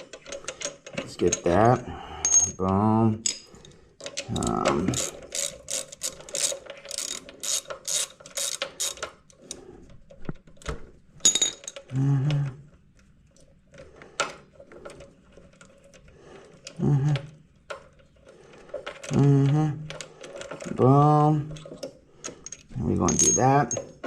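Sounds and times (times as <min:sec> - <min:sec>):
socket ratchet clicking: 0:04.1 - 0:09.5.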